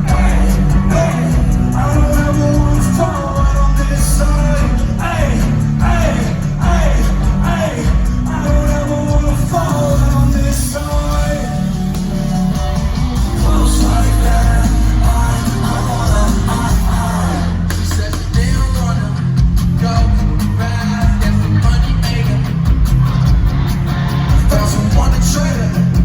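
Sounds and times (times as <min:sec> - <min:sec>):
person singing sliding notes: 0:00.0 - 0:18.3
live rock band music: 0:00.0 - 0:26.0.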